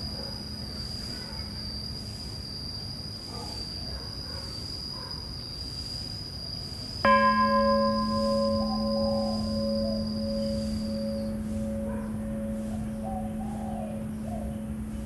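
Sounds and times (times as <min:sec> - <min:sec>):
temple bell ringing: 0:07.1 - 0:15.0
thin high-pitched tone: 0:07.1 - 0:15.0.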